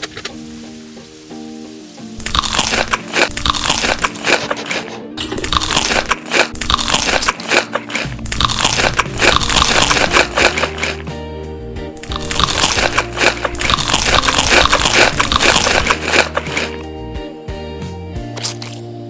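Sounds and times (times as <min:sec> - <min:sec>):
crunchy food chewing: 0:02.2 - 0:11.1, 0:12.0 - 0:16.8, 0:18.4 - 0:18.8.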